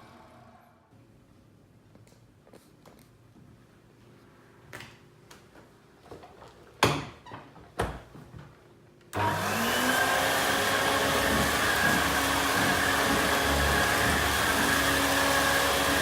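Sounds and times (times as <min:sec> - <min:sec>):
vacuum cleaner motor running: 0:09.2 - 0:16.0.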